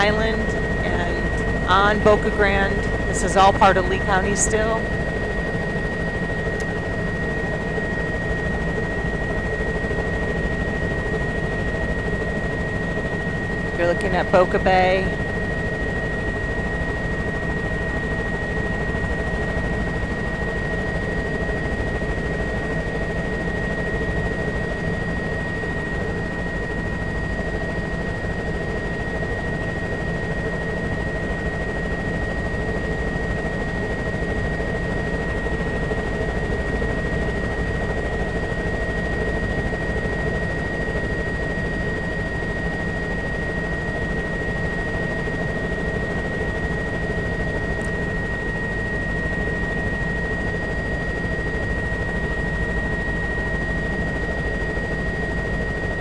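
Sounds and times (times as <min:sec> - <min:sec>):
high whine: 0:00.0 - 0:15.4
helicopter rotor and engine: 0:00.0 - 0:56.0.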